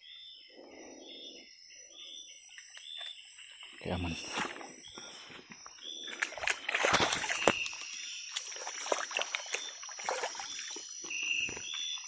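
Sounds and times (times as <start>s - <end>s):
feet splashing in shallow water: 5.9s - 12.0s.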